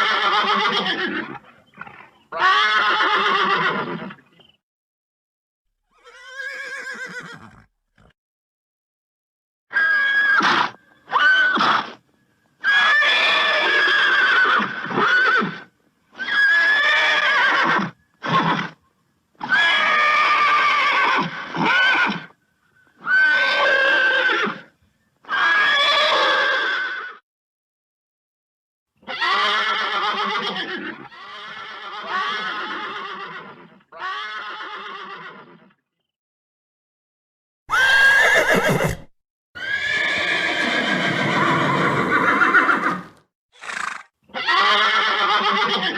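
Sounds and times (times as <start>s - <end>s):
horse neighing: 0.0s - 4.2s, 5.9s - 8.2s, 29.0s - 35.7s, 37.7s - 45.9s.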